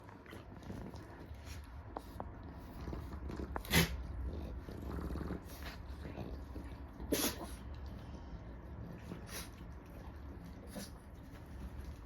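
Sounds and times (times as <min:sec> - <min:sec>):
pet sneezing: 0:03.6 - 0:04.0, 0:07.0 - 0:07.6.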